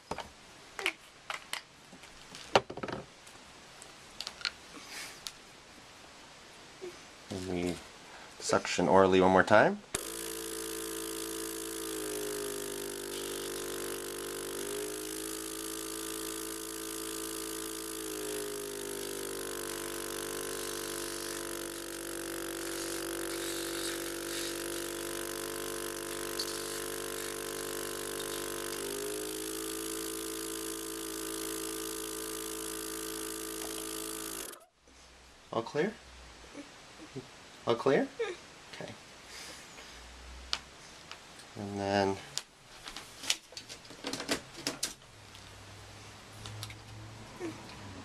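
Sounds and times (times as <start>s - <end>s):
suction pump motor humming: 10.0s - 34.7s.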